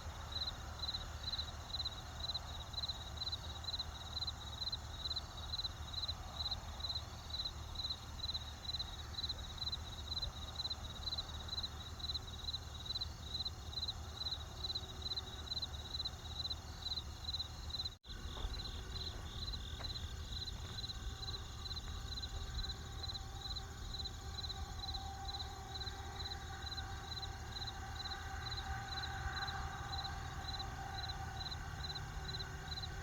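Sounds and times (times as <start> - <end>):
crickets chirping: 0.0 - 33.0
low steady hum: 0.0 - 33.0
campfire crackling: 18.0 - 22.9.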